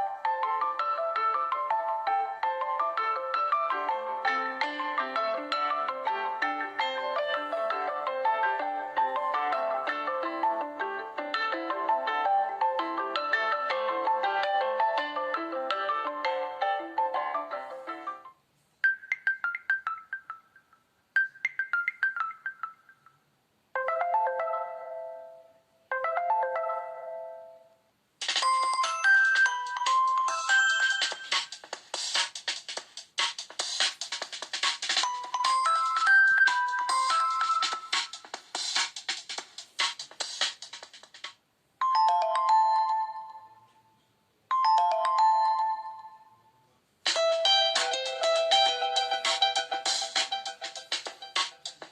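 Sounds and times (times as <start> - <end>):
falling phone ringtone: 23.8 - 31.7, 35.0 - 38.7, 41.8 - 43.8, 44.5 - 46.6.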